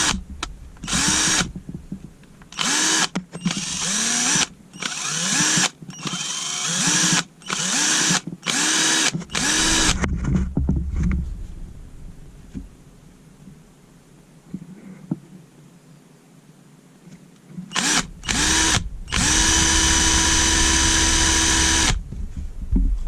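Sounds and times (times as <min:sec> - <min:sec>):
cordless drill whining: 0:00.8 - 0:01.5, 0:02.5 - 0:10.0, 0:17.7 - 0:22.0.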